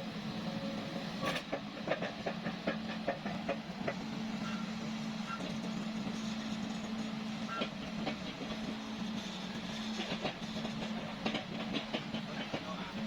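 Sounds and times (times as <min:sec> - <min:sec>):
excavator engine humming: 0:00.0 - 0:13.0.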